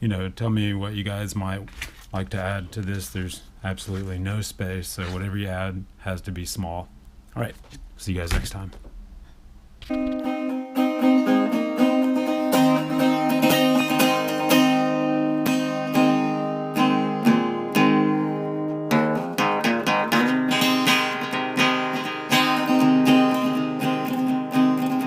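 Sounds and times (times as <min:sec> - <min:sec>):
acoustic guitar strummed and picked: 0:09.8 - 0:25.0.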